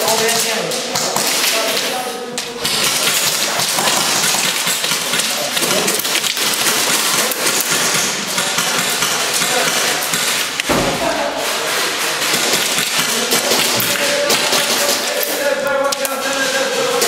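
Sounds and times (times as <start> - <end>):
airsoft gunfire: 2.6 - 15.4.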